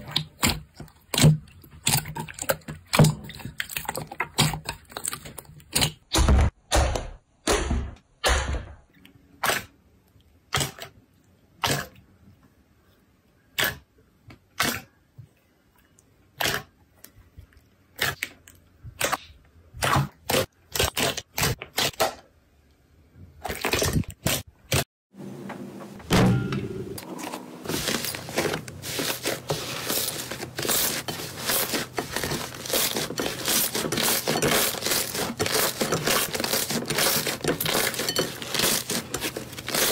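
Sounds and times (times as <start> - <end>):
crunchy slime crackling: 27.8 - 39.9.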